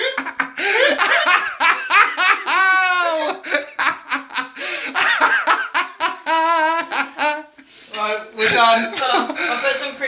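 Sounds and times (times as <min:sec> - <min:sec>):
high-pitched laugh: 0:00.0 - 0:07.6
people laughing in bursts: 0:00.0 - 0:07.7.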